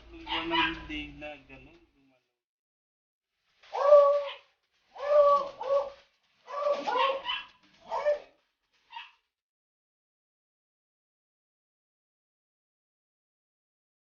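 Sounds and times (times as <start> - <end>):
dog whining: 3.8 - 8.3.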